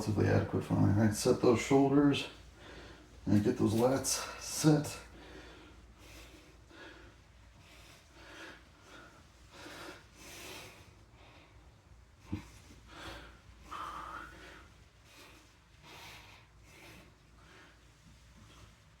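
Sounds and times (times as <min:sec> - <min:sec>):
man breathing hard: 0:04.2 - 0:18.0.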